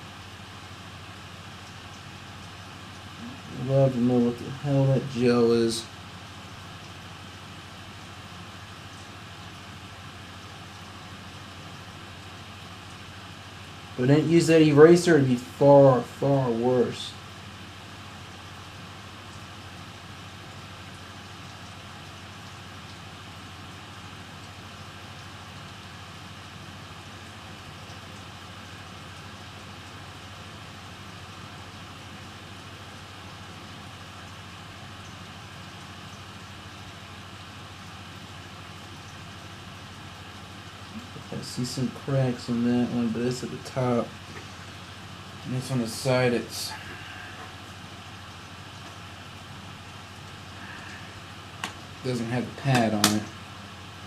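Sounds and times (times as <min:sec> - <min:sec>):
even hiss: 0:03.1 - 0:05.9, 0:40.9 - 0:48.3, 0:50.1 - 0:53.5.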